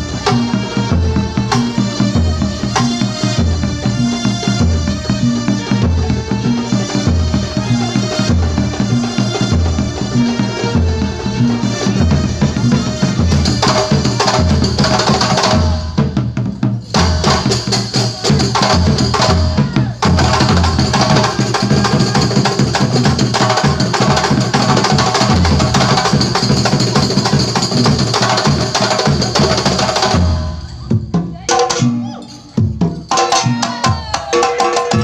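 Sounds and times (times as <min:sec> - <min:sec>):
frame drums interlocking rhythm: 0:00.0 - 0:35.0.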